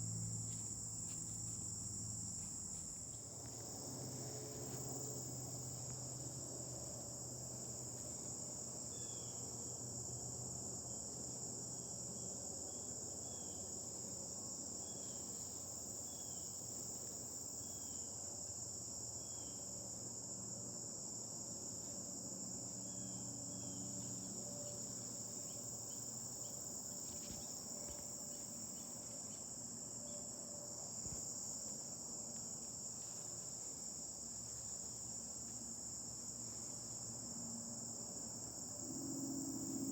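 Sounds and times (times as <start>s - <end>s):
short insect chirp: 0.0s - 7.8s, 8.9s - 9.5s
insects chorus: 0.0s - 39.9s.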